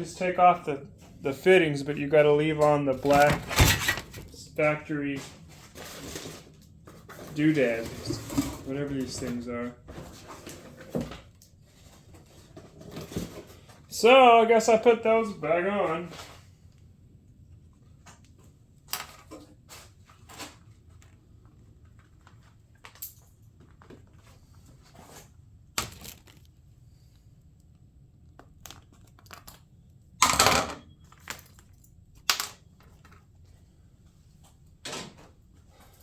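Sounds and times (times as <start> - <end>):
plastic parts clicking and rustling: 2.6 - 4.4, 25.8 - 26.6, 28.3 - 33.3
plastic scraping or crinkling: 2.9 - 4.4, 5.2 - 9.4.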